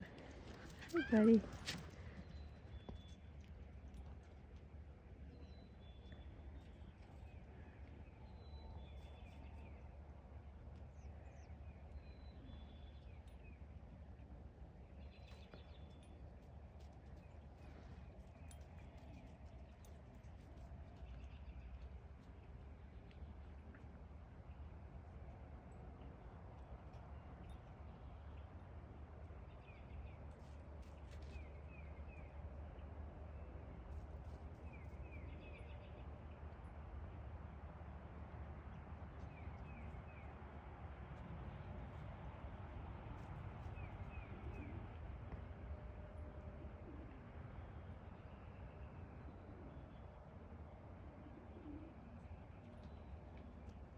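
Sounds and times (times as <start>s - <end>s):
distant bird calls and chirps: 0.0s - 25.4s, 26.2s - 37.2s.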